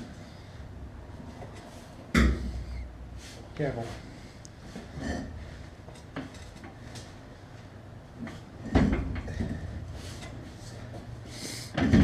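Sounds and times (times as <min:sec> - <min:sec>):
metal thump and rattle: 0:08.6 - 0:09.6, 0:11.8 - 0:12.0.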